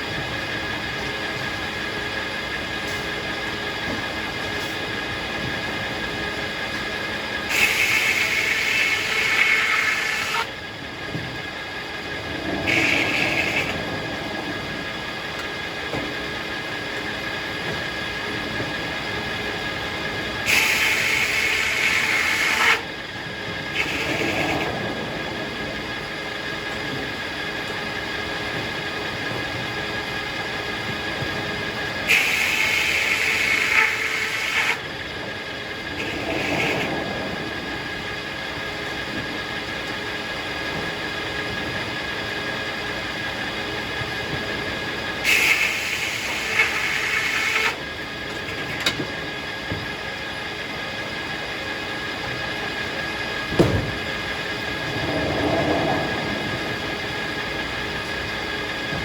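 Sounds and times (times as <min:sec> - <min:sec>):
sawmill blade whining: 0:00.0 - 0:59.0
saw cutting through log: 0:07.5 - 0:10.5, 0:20.4 - 0:22.9, 0:32.1 - 0:34.8, 0:45.2 - 0:47.8.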